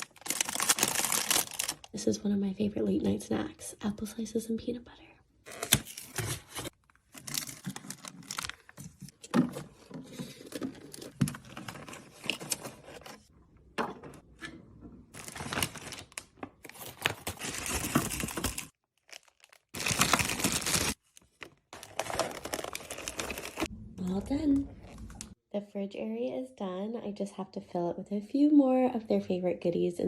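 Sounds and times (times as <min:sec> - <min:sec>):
plastic packaging crinkling: 0:00.0 - 0:01.9, 0:05.5 - 0:09.1, 0:15.2 - 0:23.7.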